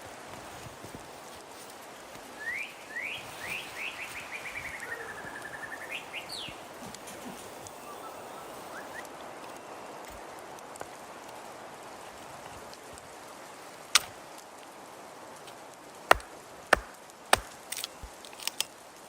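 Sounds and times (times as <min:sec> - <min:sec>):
songbird singing: 0:02.3 - 0:10.7, 0:16.1 - 0:18.5.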